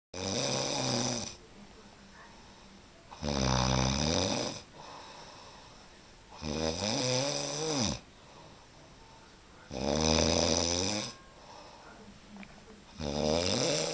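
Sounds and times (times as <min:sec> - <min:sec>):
person snoring: 0:00.2 - 0:01.4, 0:03.1 - 0:05.5, 0:06.3 - 0:08.0, 0:09.7 - 0:11.8, 0:12.9 - 0:13.9
quiet breathing: 0:00.7 - 0:13.9.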